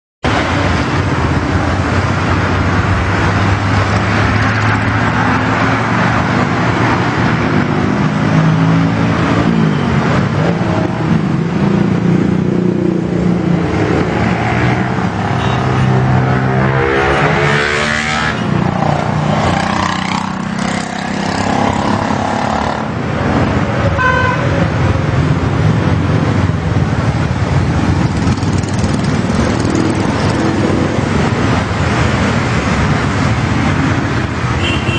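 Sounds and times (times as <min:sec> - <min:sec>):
vehicle horns tooting: 0:15.4 - 0:15.9, 0:24.0 - 0:24.5, 0:34.6 - 0:34.9
motorcycle engine running: 0:27.6 - 0:30.5.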